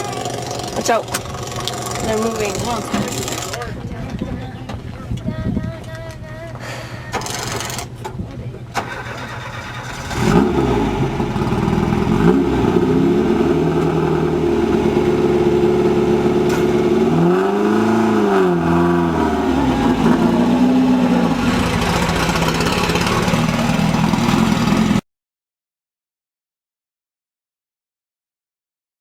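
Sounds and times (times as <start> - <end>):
race buggy engine revving: 0.0 - 3.7, 8.7 - 25.0.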